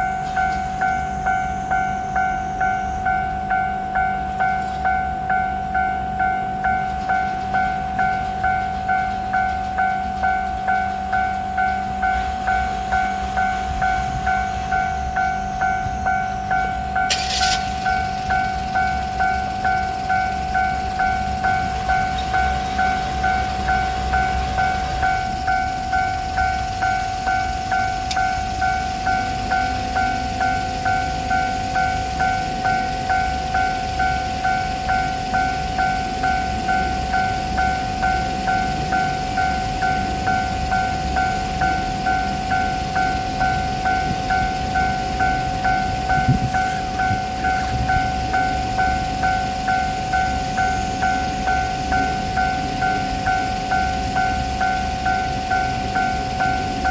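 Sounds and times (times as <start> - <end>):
level-crossing bell ringing: 0.0 - 56.9
train rumble: 0.0 - 56.9
brief hiss: 17.1 - 17.8.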